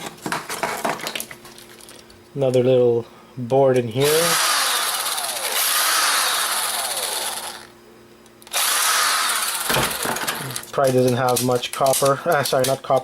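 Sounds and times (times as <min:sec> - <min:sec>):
power drill-driver running: 0:04.0 - 0:07.7, 0:08.4 - 0:10.6.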